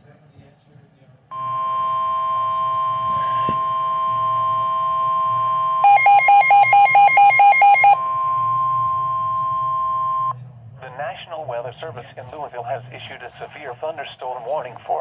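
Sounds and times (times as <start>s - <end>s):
steady warning alarm tone: 1.3s - 10.3s
rapid pulsing beeps: 1.4s - 10.3s.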